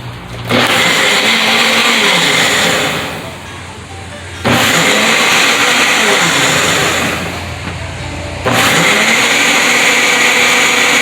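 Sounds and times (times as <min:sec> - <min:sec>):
blender motor running: 0:00.5 - 0:03.5, 0:04.4 - 0:07.6, 0:08.4 - 0:11.0.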